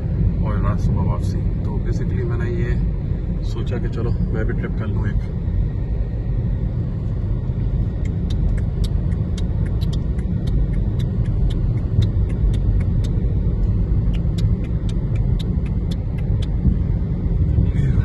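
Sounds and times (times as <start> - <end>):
road and engine rumble: 0.0 - 18.0
light high ticks: 8.0 - 16.7.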